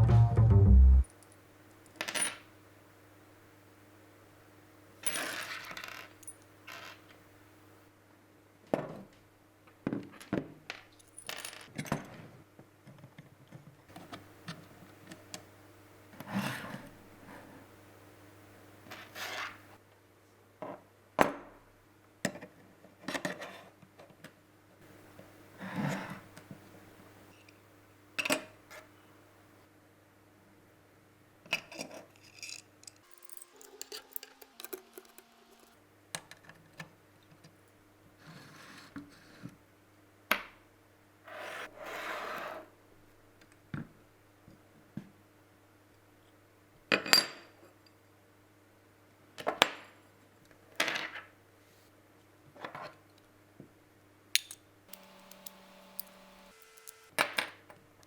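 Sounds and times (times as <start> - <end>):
metallic clicks and clinks: 32.3 - 35.2
faint steady hum: 53.2 - 57.2.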